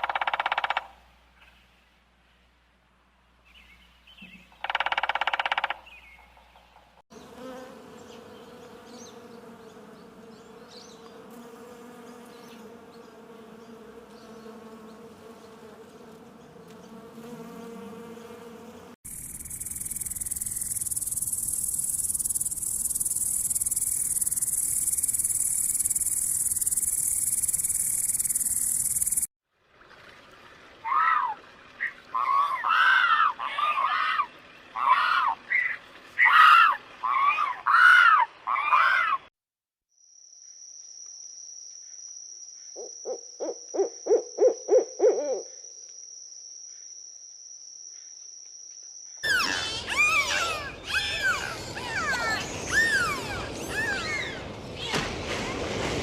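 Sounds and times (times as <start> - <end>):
insect buzz: 7.1 - 29.3, 39.9 - 53.6
high-pitched insect trill: 19.1 - 29.3, 39.9 - 53.7
rapid chirping calls: 19.1 - 29.3, 49.2 - 54.4
low hoots: 43.1 - 45.5.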